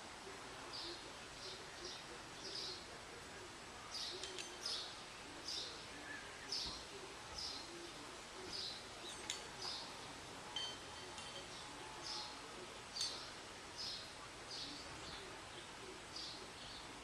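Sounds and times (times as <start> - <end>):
faint bird chirps: 3.9 - 17.0.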